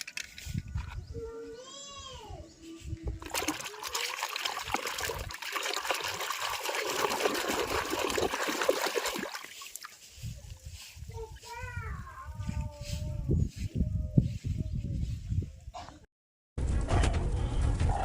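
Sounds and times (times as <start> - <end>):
water running and splashing: 3.2 - 10.2.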